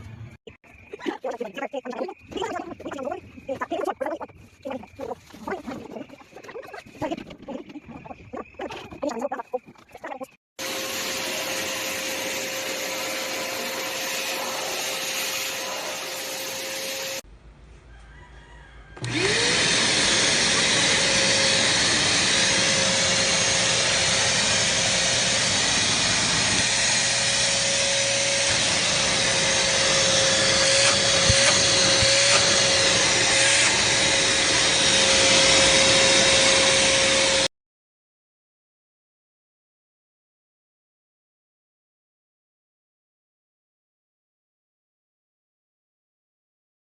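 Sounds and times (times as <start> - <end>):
vacuum cleaner motor whine: 10.6 - 17.2, 19.0 - 37.5.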